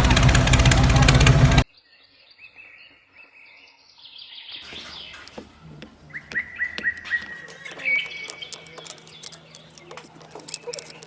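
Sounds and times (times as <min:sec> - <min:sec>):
birds chirping: 0:00.7 - 0:11.0
faint clicks: 0:06.3 - 0:11.0.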